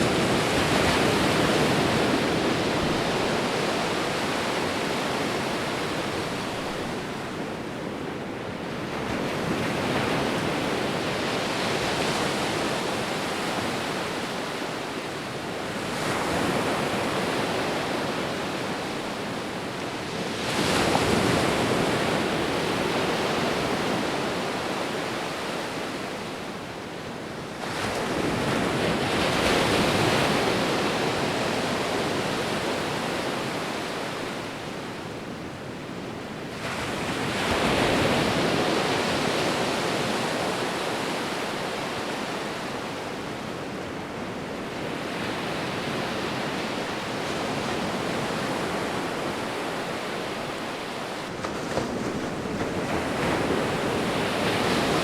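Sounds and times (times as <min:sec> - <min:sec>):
ocean waves breaking on beach: 0:00.0 - 0:55.0.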